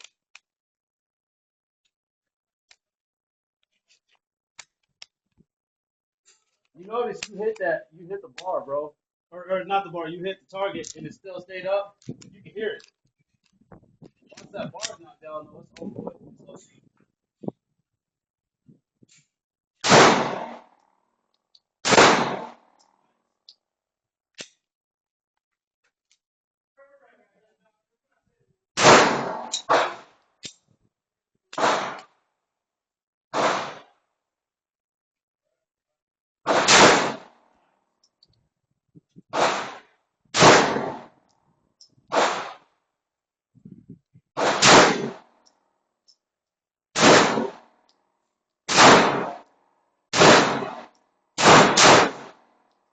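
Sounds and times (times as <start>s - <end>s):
airsoft gun shots: 19.8s - 20.7s, 21.8s - 22.6s, 28.8s - 30.1s, 31.6s - 32.1s, 33.4s - 33.9s, 36.5s - 37.3s, 39.3s - 41.1s, 42.1s - 42.6s, 44.4s - 45.3s, 47.0s - 47.6s, 48.7s - 49.4s, 50.2s - 52.4s.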